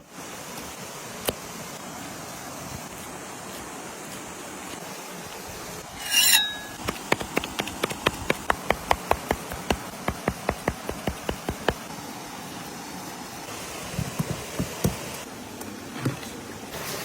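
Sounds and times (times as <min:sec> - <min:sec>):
loud scrape: 0:05.8 - 0:07.9
knife chopping on cutting board: 0:06.0 - 0:11.9, 0:13.8 - 0:15.1.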